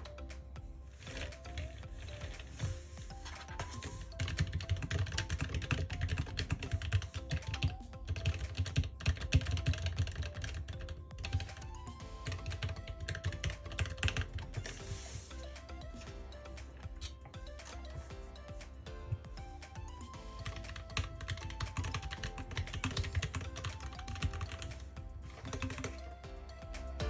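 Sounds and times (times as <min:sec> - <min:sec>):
background music: 0:00.0 - 0:27.0
mechanical keyboard typing: 0:03.5 - 0:11.6, 0:20.4 - 0:24.8, 0:25.4 - 0:26.0.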